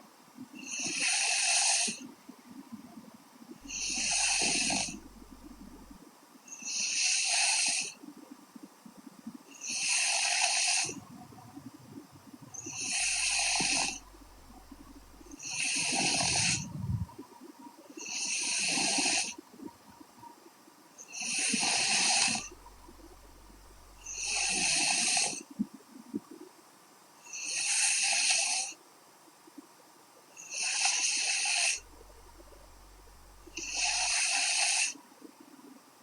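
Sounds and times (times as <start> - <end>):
woman snoring: 3.6 - 5.9, 12.7 - 17.0, 21.1 - 25.4, 30.6 - 34.9.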